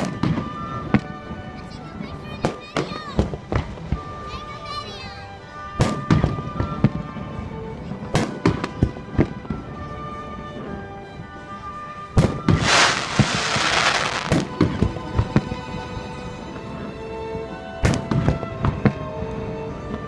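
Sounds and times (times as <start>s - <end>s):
fireworks crackling: 0.0s - 5.2s, 12.2s - 19.1s
fireworks bangs: 2.0s - 4.0s, 12.2s - 15.6s.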